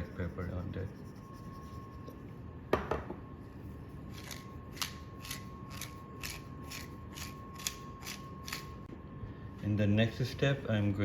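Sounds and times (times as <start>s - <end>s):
pepper mill grinding: 4.1s - 8.7s.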